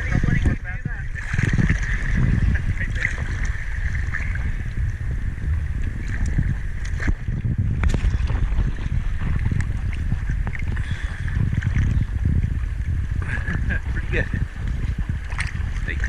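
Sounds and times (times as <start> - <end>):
low rumble of moving water: 0.0 - 16.0.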